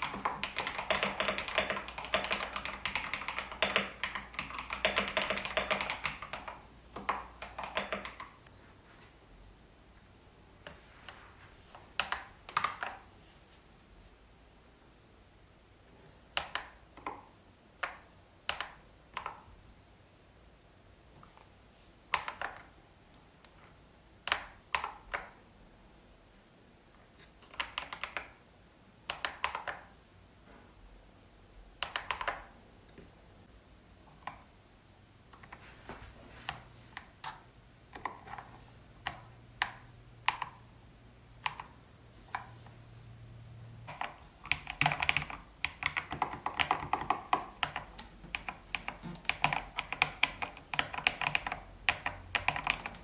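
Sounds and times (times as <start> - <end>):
mechanical keyboard typing: 0.0 - 8.4, 12.0 - 13.1, 16.4 - 19.5, 22.1 - 22.7, 24.3 - 25.4, 27.4 - 28.4, 29.1 - 29.9, 31.8 - 32.5, 36.5 - 40.6, 43.8 - 53.0.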